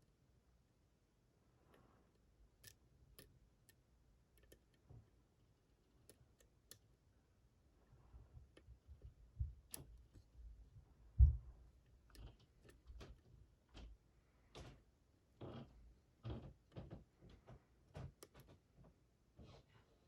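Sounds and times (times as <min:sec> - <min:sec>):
lock pick clicking: 0:02.6 - 0:03.8, 0:04.4 - 0:04.9.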